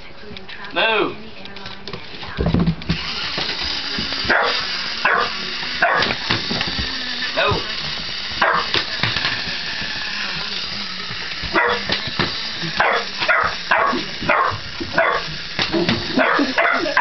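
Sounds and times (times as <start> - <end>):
steady hissing whir: 1.4 - 17.0
dog barking: 4.3 - 6.2, 8.4 - 8.7, 11.5 - 11.9, 12.8 - 15.3, 16.2 - 17.0.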